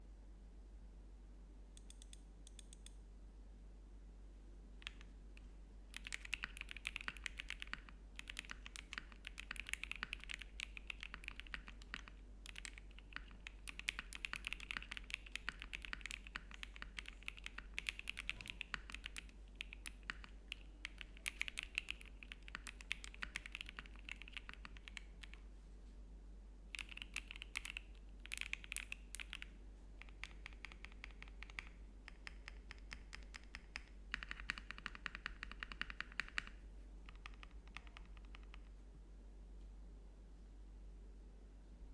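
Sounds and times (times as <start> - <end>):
mechanical keyboard typing: 4.8 - 5.1, 5.9 - 25.4, 26.7 - 38.7.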